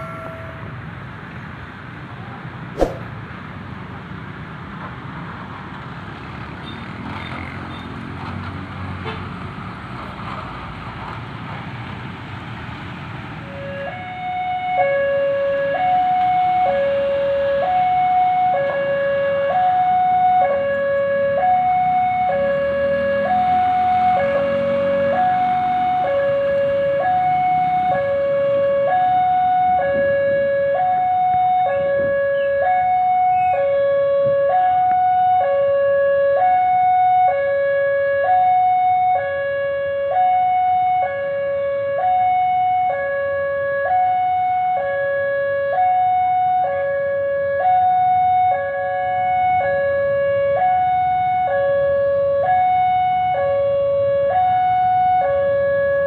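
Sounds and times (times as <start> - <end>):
level crossing hi-lo siren: 13.6 - 56.0.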